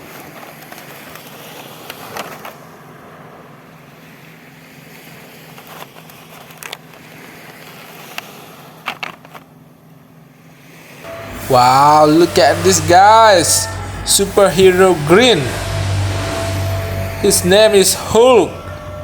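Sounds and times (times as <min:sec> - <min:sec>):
steady background hum: 0:11.1 - 0:19.0.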